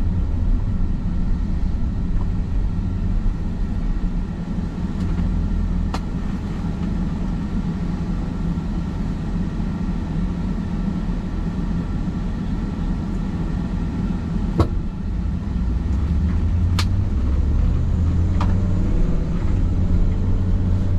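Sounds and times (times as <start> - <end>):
motor vehicle rumble: 0.0 - 8.4, 13.9 - 20.9.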